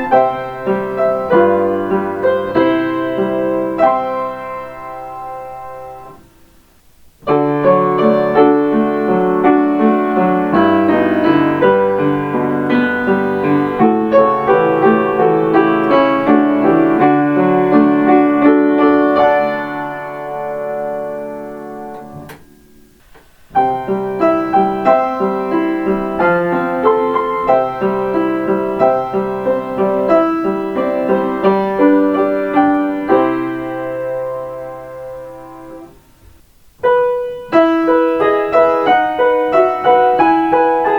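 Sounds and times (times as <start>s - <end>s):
click: 21.9s - 22.4s.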